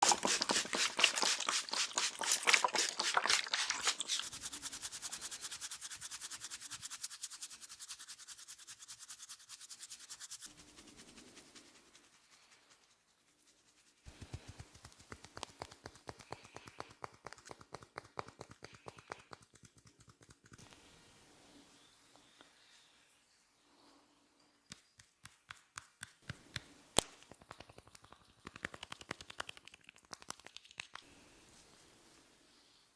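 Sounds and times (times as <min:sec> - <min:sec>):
hands tapping on head: 0:14.1 - 0:20.7, 0:24.7 - 0:31.0.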